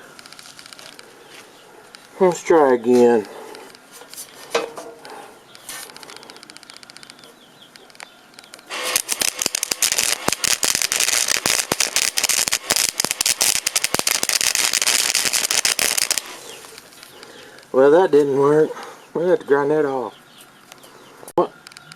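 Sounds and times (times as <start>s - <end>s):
welder arc crackling and spattering: 0.0s - 1.1s, 5.6s - 7.2s, 7.8s - 17.9s.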